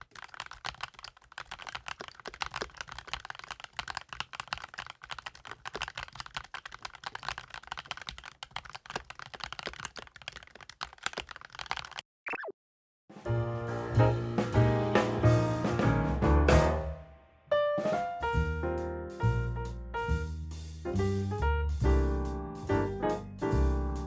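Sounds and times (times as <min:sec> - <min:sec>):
typing on mechanical keyboard: 0:00.0 - 0:12.0.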